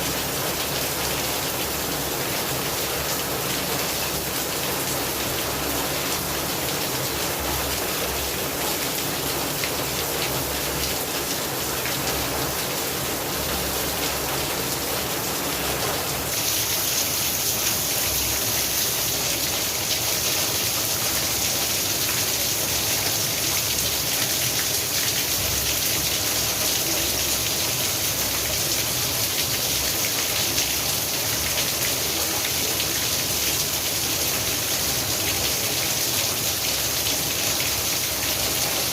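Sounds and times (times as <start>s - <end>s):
steady rainfall: 0.0s - 38.9s.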